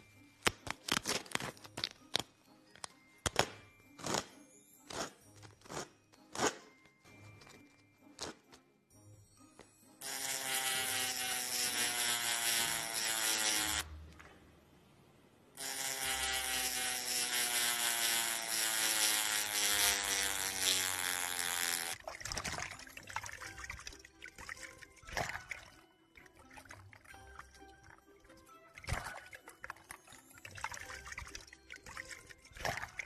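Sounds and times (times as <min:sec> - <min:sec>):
liquid pouring into container: 0:22.0 - 0:28.1.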